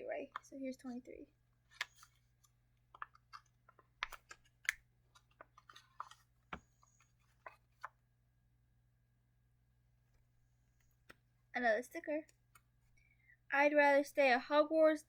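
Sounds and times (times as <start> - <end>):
faint clicks and taps: 1.6 - 8.0, 10.1 - 11.3
paper rustling: 1.6 - 8.0.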